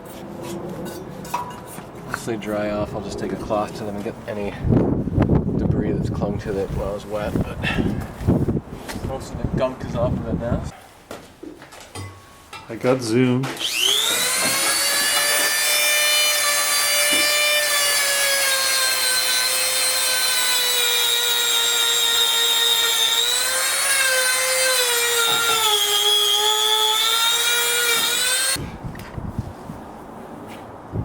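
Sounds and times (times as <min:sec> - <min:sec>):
power tool motor whining: 0:13.6 - 0:28.6.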